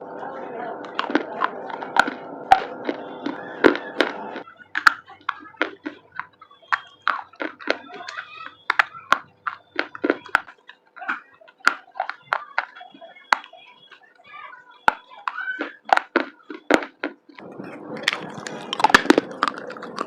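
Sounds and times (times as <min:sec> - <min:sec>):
dry clay crunching and snapping: 0:00.9 - 0:14.0, 0:18.0 - 0:20.0.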